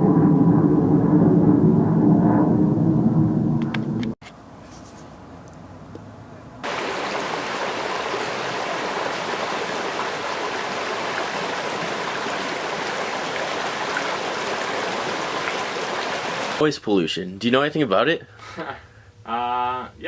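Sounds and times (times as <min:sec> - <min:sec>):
loud rushing water: 0:06.6 - 0:16.6.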